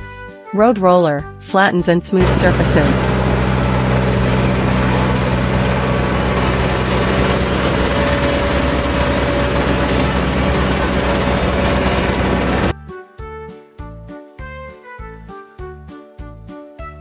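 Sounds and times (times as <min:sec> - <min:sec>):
road roller engine humming: 0:02.2 - 0:12.7.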